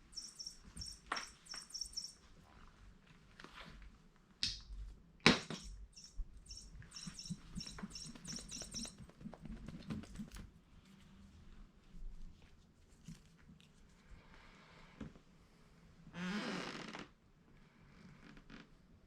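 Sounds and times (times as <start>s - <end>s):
electronic bird chirps from toy: 0.1s - 2.2s, 6.0s - 9.0s.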